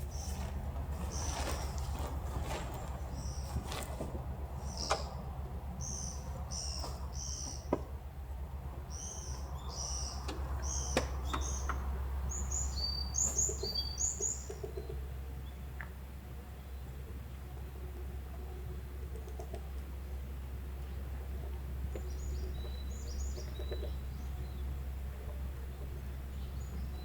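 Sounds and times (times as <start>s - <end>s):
small birds chirping: 0.0s - 8.0s, 8.7s - 15.6s, 21.8s - 27.0s.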